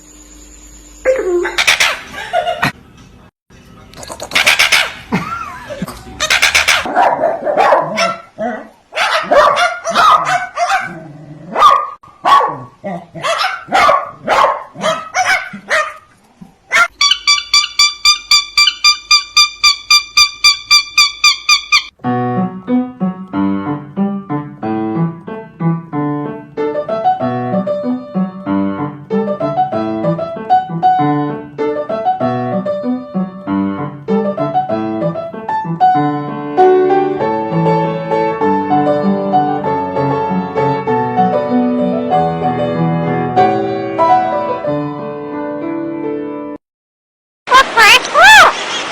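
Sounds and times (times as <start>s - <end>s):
dog barking: 1.5s - 2.1s, 4.4s - 5.0s, 6.3s - 16.1s, 16.7s - 17.2s
piano music: 21.9s - 46.6s.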